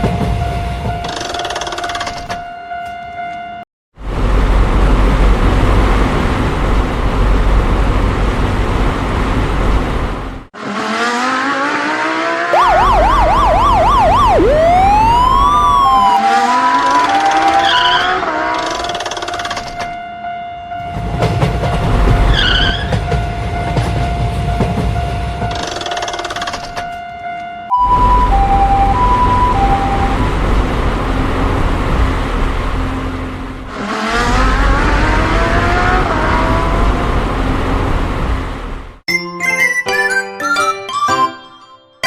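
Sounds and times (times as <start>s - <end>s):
loud rumbling noise: 4.0s - 10.7s, 12.5s - 16.2s, 27.8s - 39.0s
siren wail: 10.6s - 19.0s, 26.9s - 30.6s, 33.7s - 37.2s
steady tone: 12.5s - 17.5s
whistle-like glides: 12.5s - 18.4s.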